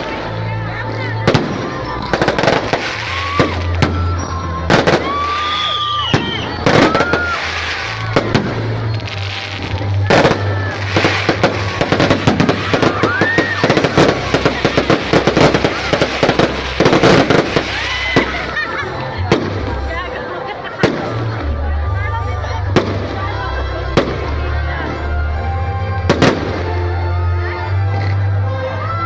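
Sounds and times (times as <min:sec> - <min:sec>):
fireworks bangs and crackling: 0:00.0 - 0:27.1
firework whistles: 0:01.5 - 0:18.6.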